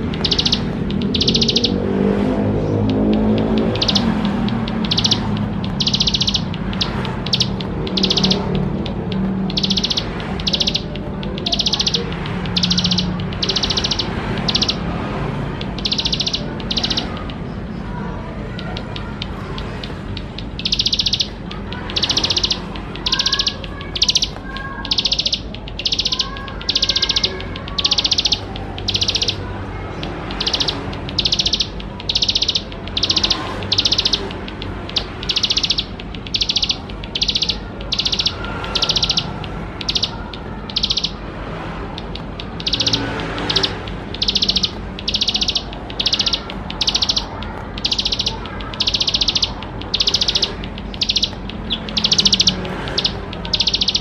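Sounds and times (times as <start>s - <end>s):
faint lower bird chirps: 0.0s - 1.8s, 3.1s - 8.5s, 9.6s - 14.8s, 15.8s - 17.2s, 35.0s - 41.2s, 42.1s - 54.0s
bird buzzy trill: 0.0s - 54.0s.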